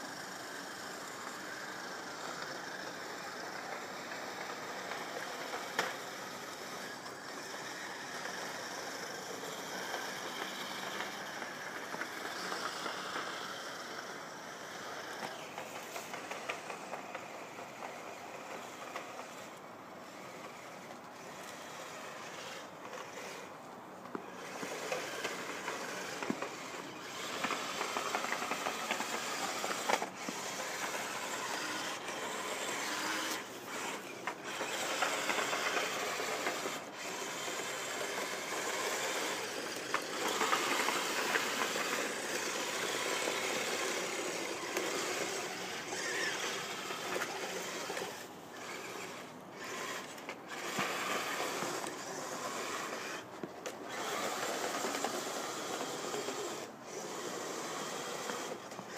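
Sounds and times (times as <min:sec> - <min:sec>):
model snow groomers grinding hiss: 0:00.0 - 0:58.9.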